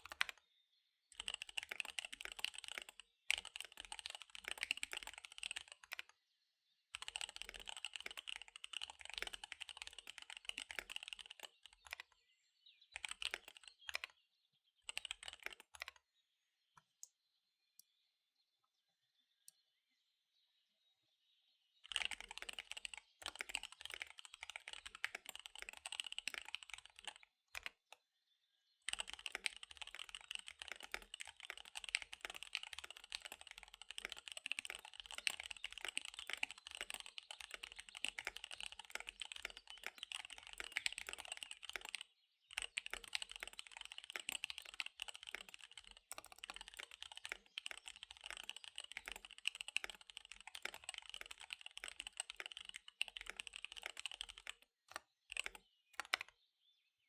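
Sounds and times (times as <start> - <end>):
fast mechanical keyboard typing: 0.0 - 0.4, 1.1 - 6.0, 6.9 - 12.1, 13.0 - 14.1, 14.9 - 15.9, 21.8 - 27.9, 28.9 - 56.3.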